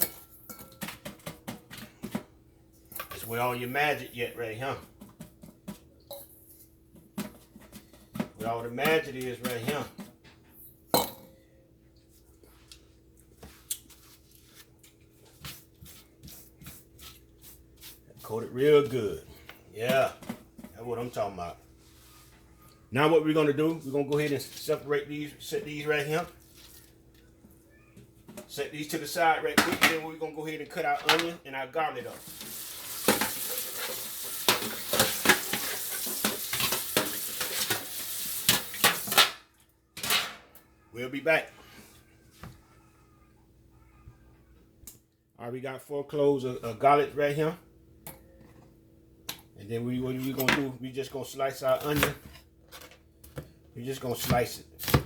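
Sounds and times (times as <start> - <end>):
kitchen clicks and knocks: 0.0 - 2.3, 29.6 - 30.1, 31.0 - 31.3, 40.0 - 40.6.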